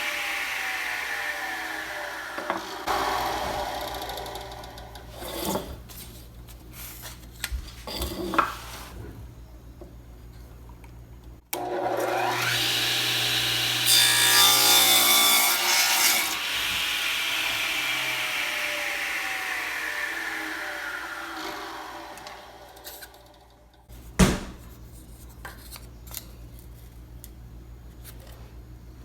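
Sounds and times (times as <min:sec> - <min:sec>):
power tool cutting wood: 0:00.0 - 0:05.2, 0:11.6 - 0:23.5.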